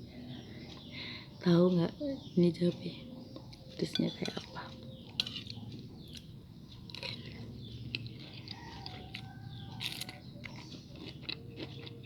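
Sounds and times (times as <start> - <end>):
person chewing crunchy food: 5.0 - 12.0.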